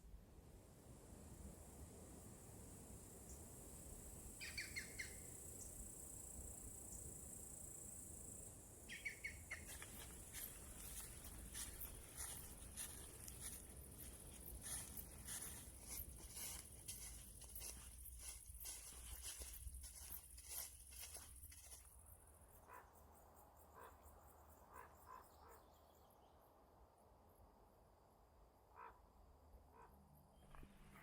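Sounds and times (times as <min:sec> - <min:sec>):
insects chirring: 0:03.3 - 0:23.6
bird chirps: 0:04.4 - 0:05.3, 0:08.9 - 0:10.1.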